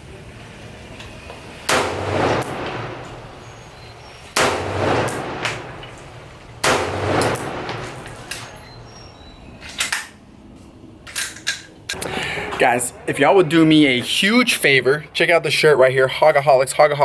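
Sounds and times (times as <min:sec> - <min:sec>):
faint sharp cracks: 0:01.0 - 0:09.0
rifle shots echoing: 0:01.6 - 0:10.3.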